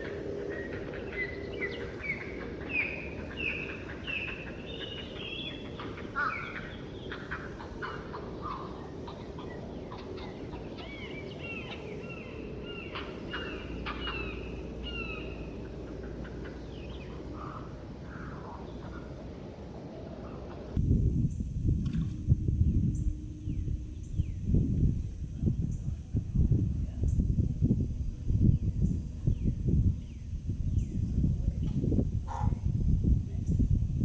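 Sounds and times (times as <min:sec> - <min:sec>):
soft steady background hiss: 0:00.0 - 0:34.0
birds chirping: 0:20.8 - 0:34.0.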